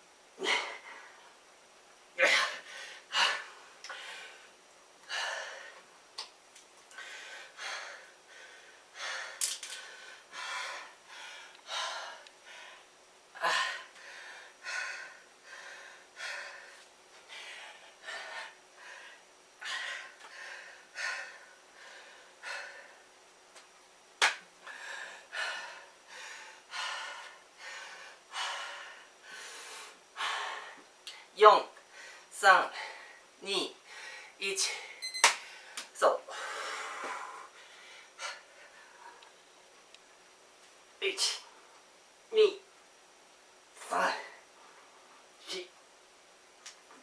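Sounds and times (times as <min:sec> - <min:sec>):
man panting: 0:00.4 - 0:01.2, 0:02.2 - 0:05.8, 0:06.9 - 0:23.0, 0:24.6 - 0:30.9, 0:32.0 - 0:33.2, 0:36.3 - 0:39.3.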